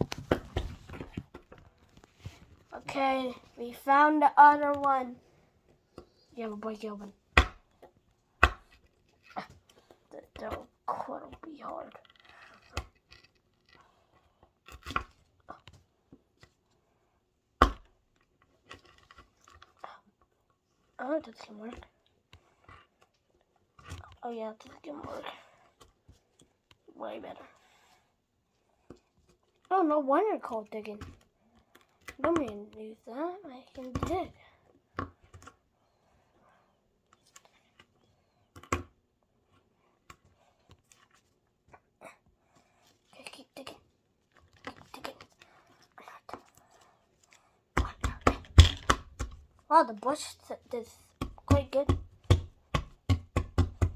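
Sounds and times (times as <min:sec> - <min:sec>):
hand tool knocking on plaster: 0:51.2 - 0:53.9.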